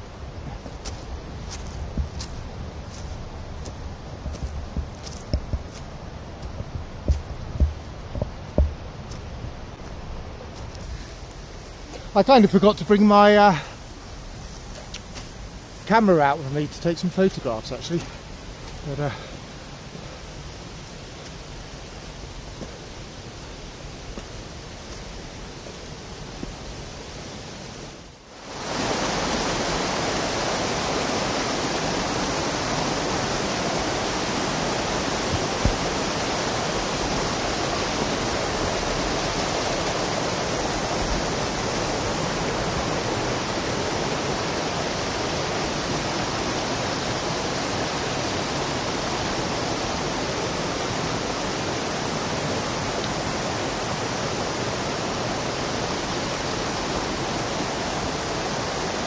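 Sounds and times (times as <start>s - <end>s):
waterfall rushing: 15.3s - 59.0s.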